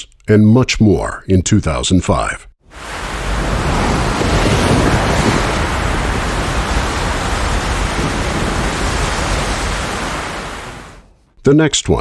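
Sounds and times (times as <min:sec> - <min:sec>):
hurricane wind roaring: 0:02.7 - 0:11.1.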